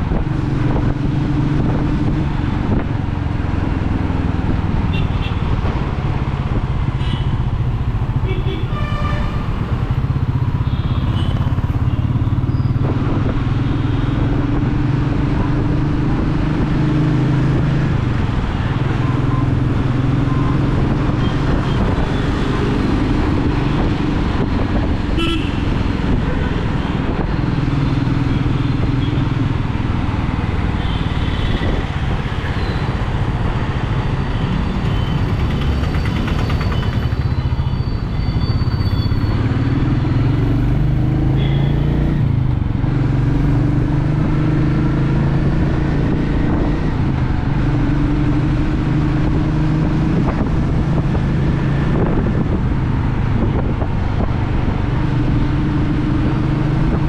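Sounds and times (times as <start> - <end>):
motorcycle engine cruising: 31.5 - 57.0.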